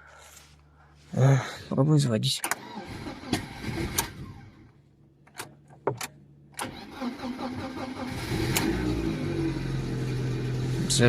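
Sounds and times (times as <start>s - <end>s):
car engine idling: 7.3s - 11.0s.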